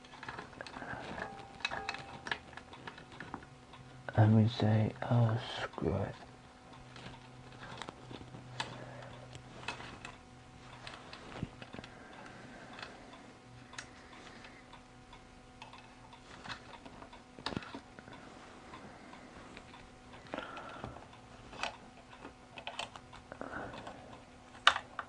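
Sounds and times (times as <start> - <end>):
metal parts clicking and tapping: 0.0 - 3.5
faint steady hum: 0.0 - 25.0.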